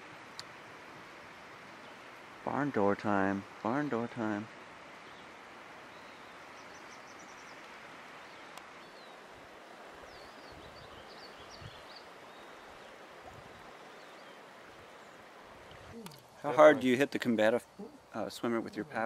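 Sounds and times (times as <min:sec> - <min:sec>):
flowing river water: 0:00.0 - 0:19.0
small birds chirping: 0:04.9 - 0:16.2.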